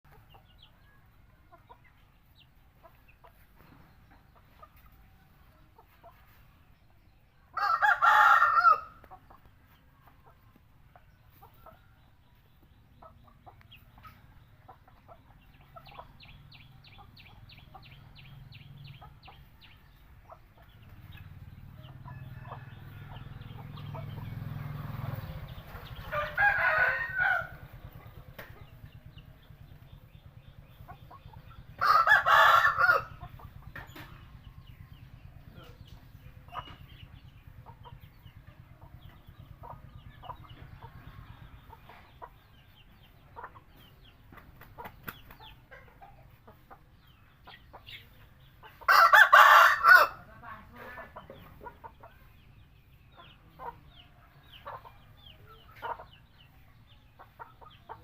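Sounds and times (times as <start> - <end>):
hens clucking: 0.1 - 6.7, 7.6 - 58.0
rooster crowing: 7.6 - 9.0, 26.1 - 27.6, 31.8 - 33.2, 48.9 - 50.2.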